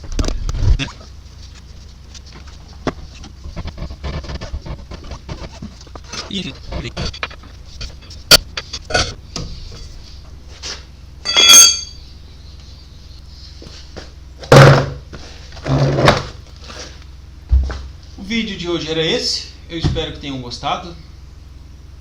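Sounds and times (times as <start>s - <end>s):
ringing metallic clink: 11.2s - 12.0s
heavy thunks: 14.0s - 16.4s, 17.4s - 18.0s.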